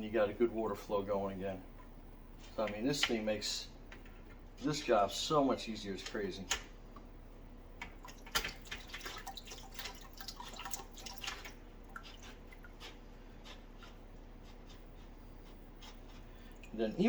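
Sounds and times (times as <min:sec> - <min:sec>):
water drips and clicks: 0:07.8 - 0:12.8, 0:16.5 - 0:16.8
water running through siphon: 0:08.0 - 0:17.0.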